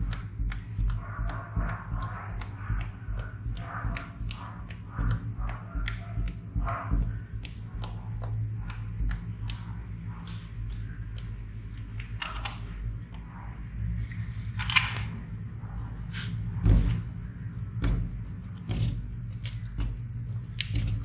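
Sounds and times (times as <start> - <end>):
low hum: 0.0 - 21.0
slime squelching: 15.8 - 21.0.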